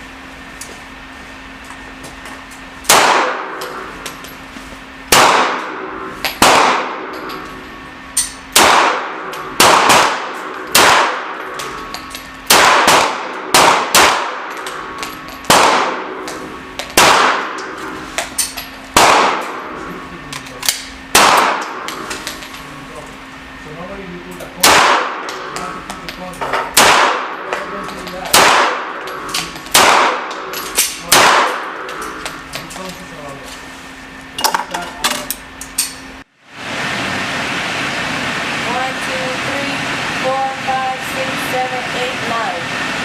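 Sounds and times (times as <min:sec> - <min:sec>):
fainter gunshots: 0:02.9 - 0:03.5, 0:05.1 - 0:05.8, 0:06.4 - 0:07.0, 0:08.5 - 0:11.4, 0:12.5 - 0:14.6, 0:15.5 - 0:16.1, 0:16.9 - 0:17.6, 0:18.9 - 0:19.6, 0:21.1 - 0:21.9, 0:24.6 - 0:25.3, 0:26.8 - 0:27.5, 0:28.3 - 0:29.0, 0:29.7 - 0:30.3, 0:31.0 - 0:31.8
pistol shots ringing indoors: 0:02.9 - 0:03.9, 0:05.1 - 0:07.4, 0:08.2 - 0:16.3, 0:16.9 - 0:17.8, 0:18.9 - 0:19.8, 0:20.7 - 0:22.0, 0:24.6 - 0:25.6, 0:26.7 - 0:27.6, 0:28.3 - 0:32.2.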